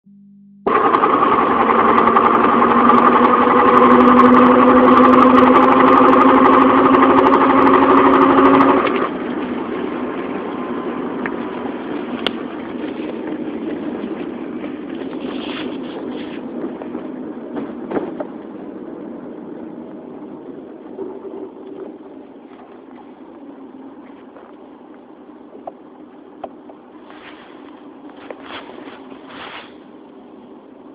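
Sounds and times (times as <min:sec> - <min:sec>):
car whine under acceleration: 0:00.6 - 0:30.9
road noise: 0:00.7 - 0:30.9.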